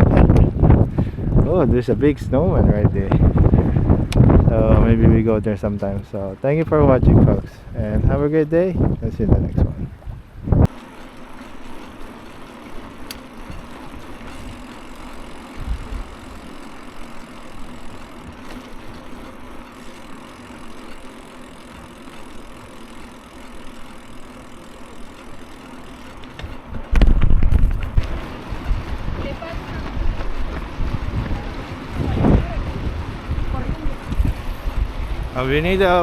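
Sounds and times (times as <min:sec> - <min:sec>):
wind buffeting microphone: 0:00.0 - 0:10.8, 0:11.6 - 0:21.9, 0:26.0 - 0:36.0
road traffic engine noise: 0:10.2 - 0:36.0.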